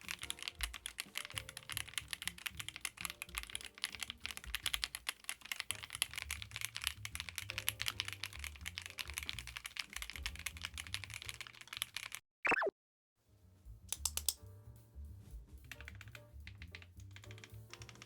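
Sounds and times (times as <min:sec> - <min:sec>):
mechanical keyboard typing: 0:00.0 - 0:12.2, 0:15.7 - 0:18.0.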